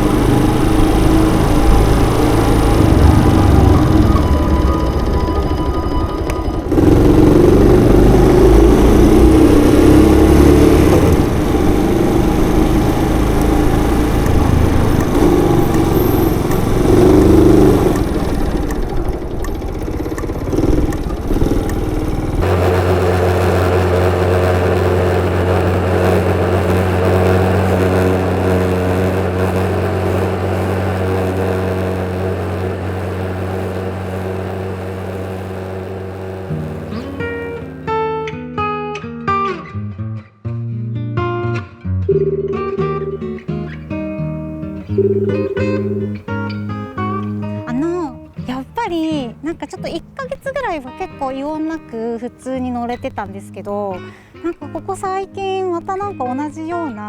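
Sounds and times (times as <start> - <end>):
rushing wind: 0.0 - 37.6
steady hum: 0.0 - 38.1, 42.5 - 47.7
small motorcycle engine running: 0.0 - 38.3, 42.3 - 53.2.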